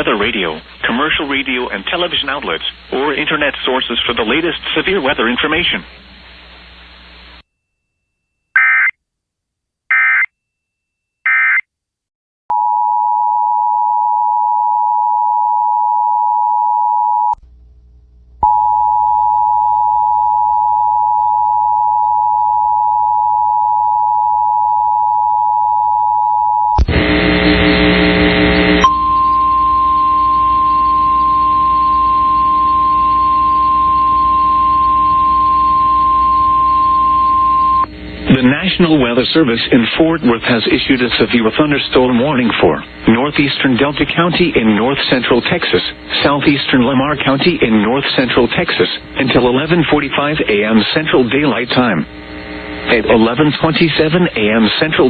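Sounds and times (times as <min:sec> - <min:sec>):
data bursts: 0:27.1 - 0:48.6
two-tone attention signal: 0:28.8 - 0:37.9.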